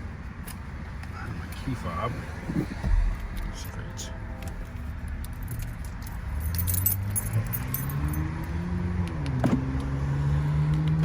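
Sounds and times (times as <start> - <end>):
pickup engine revving and idling: 1.4 - 11.0
keys jingling: 5.4 - 8.2.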